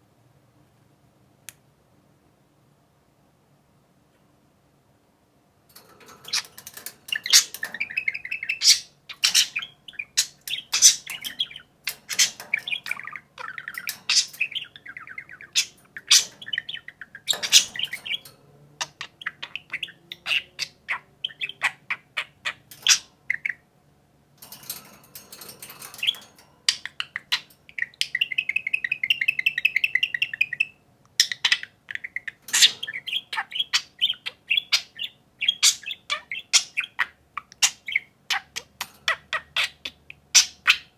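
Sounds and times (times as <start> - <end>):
budgerigars chattering: 5.8 - 23.6, 25.5 - 40.9.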